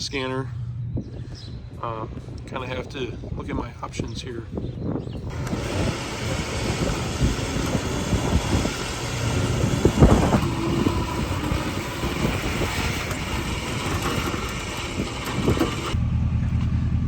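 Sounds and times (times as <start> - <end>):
road and wind noise: 0.0 - 17.0
vehicle engine running: 5.2 - 17.0.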